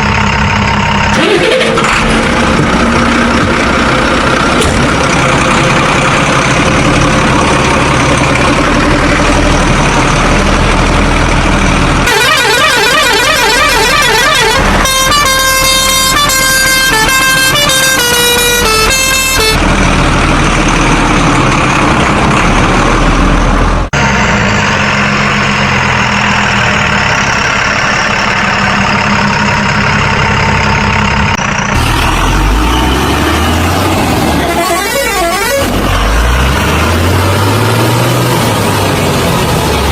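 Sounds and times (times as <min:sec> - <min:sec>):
truck engine drone: 0:00.0 - 0:39.9
horn tune: 0:12.1 - 0:19.6, 0:34.2 - 0:36.2.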